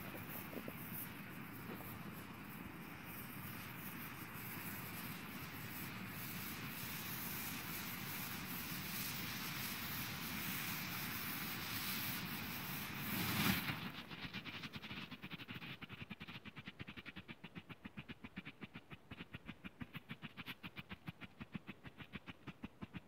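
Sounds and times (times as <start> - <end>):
flare hissing: 0.0 - 15.0
fast even crackle: 0.0 - 23.0.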